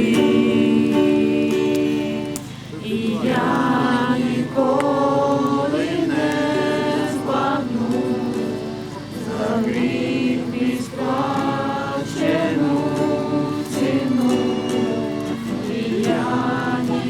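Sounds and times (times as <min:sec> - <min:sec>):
group singing a worship song: 0:00.0 - 0:17.0
short breath: 0:02.4 - 0:02.8.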